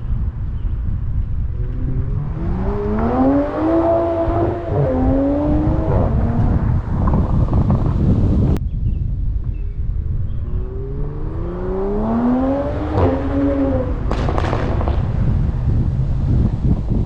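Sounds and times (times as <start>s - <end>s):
car engine accelerating hard: 1.5s - 8.5s, 10.5s - 17.0s
exhaust pops and crackles: 6.3s - 8.6s, 12.9s - 17.0s.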